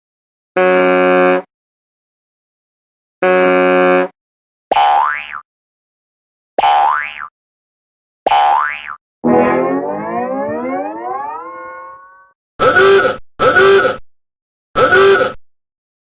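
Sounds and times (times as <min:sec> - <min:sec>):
springy boing effect: 0:08.4 - 0:12.3
short flat buzzy tones: 0:09.2 - 0:12.4.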